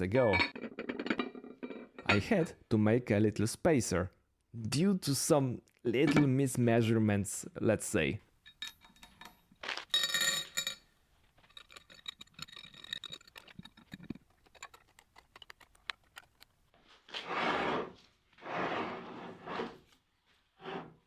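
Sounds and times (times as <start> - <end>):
steel machine parts clinking: 8.4 - 16.6
metal parts scraping: 11.4 - 16.6.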